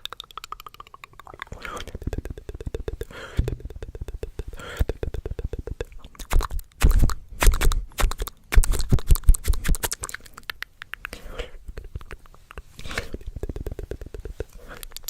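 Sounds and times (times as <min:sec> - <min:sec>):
heavier thumps: 0:03.4 - 0:03.8.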